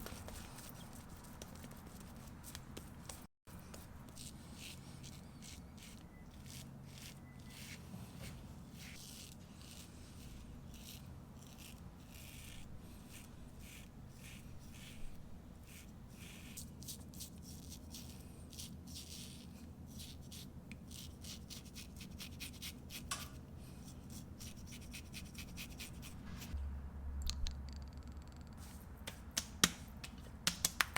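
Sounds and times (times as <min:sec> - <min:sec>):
razor scraping skin: 0:00.0 - 0:26.6
low steady hum: 0:23.1 - 0:30.5
low rumble: 0:26.2 - 0:28.6.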